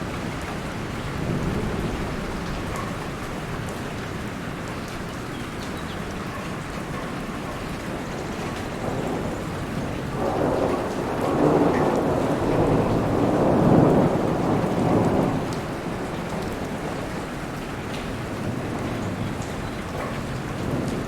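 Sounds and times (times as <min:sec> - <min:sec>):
steady rainfall: 0:00.0 - 0:21.0
thunder rolling: 0:08.6 - 0:17.6.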